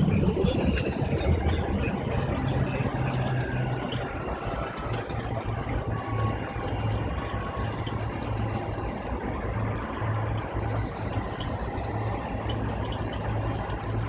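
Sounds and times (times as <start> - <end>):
jet engines rumbling: 0.0 - 5.0.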